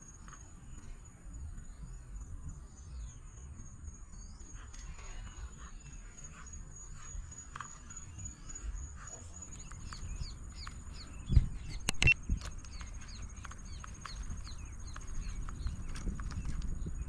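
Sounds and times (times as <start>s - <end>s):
bird chirping: 0.0s - 17.0s
sharp clicks: 9.5s - 17.0s.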